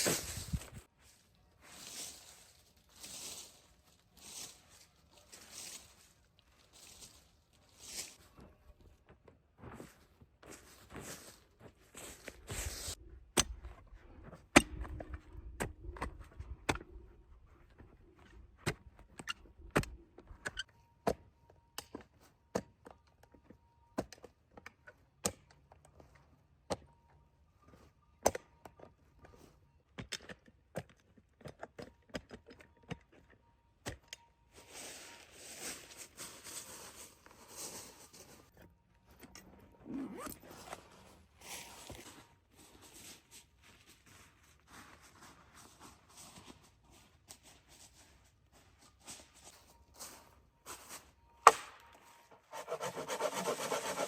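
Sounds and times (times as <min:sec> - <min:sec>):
rustling: 0:00.0 - 0:08.4.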